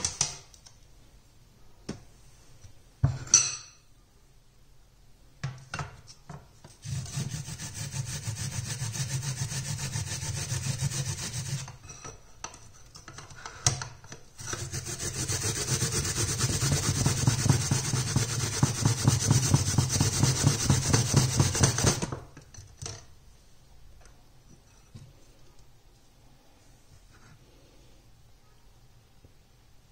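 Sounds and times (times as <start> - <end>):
rasping strokes on rough surface: 6.8 - 11.8, 14.4 - 22.0.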